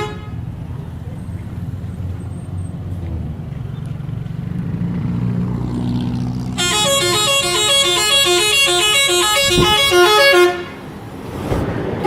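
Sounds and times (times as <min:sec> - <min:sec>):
multi-tone bus horn tune: 0:00.0 - 0:00.5, 0:06.5 - 0:10.9
bus engine rumble: 0:00.0 - 0:12.0.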